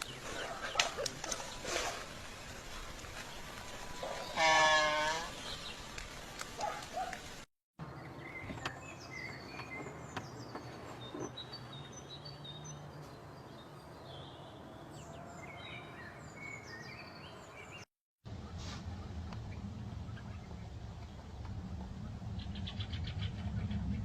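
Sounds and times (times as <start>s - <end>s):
small birds chirping: 0.0s - 17.9s.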